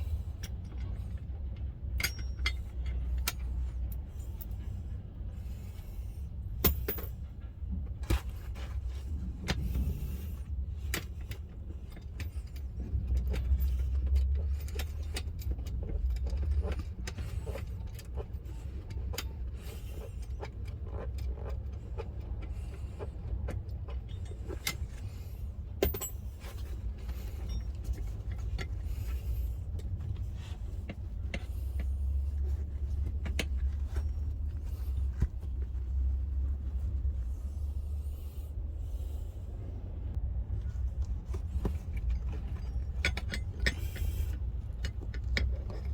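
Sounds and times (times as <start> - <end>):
metallic clicks of tools: 0.0 - 4.6
steady low rumble: 0.0 - 45.9.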